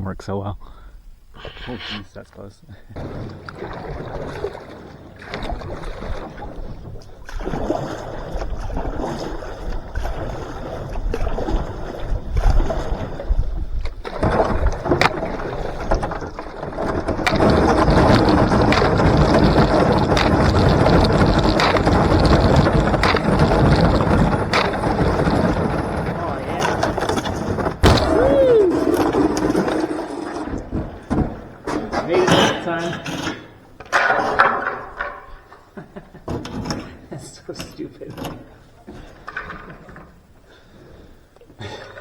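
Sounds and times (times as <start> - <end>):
canoe hull crunching through ice: 3.0 - 35.6
ice cracking: 14.0 - 32.9.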